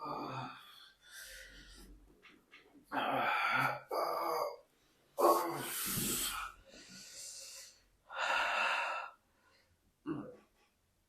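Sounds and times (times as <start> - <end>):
person breathing deeply: 0.0 - 2.0, 5.2 - 9.8.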